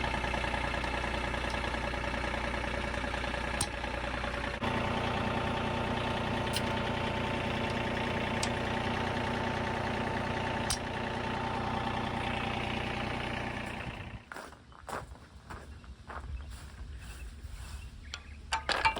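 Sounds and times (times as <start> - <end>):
tractor diesel engine running: 0.0 - 14.5.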